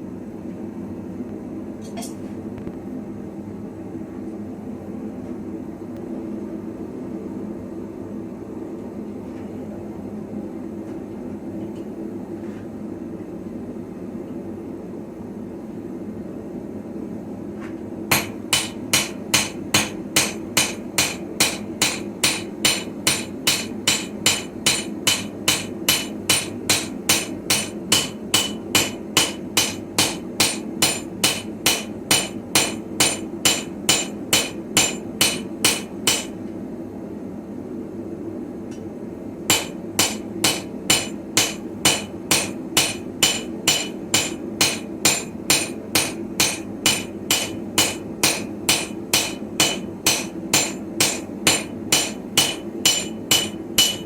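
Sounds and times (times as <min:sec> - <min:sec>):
hammer striking steel on anvil: 0:01.8 - 0:02.2, 0:18.1 - 0:36.4, 0:39.5 - 0:54.0.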